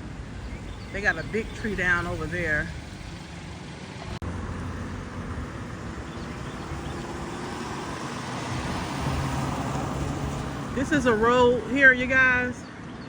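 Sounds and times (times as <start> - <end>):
car engine running: 0.0 - 12.4
road noise: 0.0 - 13.0.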